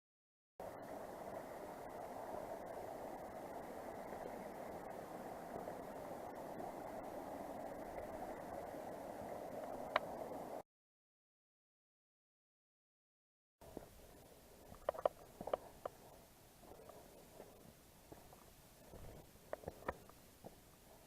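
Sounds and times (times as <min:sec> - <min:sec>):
creek water rushing: 0:00.6 - 0:10.6.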